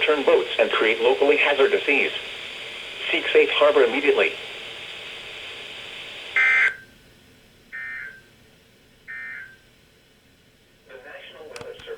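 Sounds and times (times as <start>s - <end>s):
radio hiss: 0.0s - 6.8s, 10.9s - 11.9s.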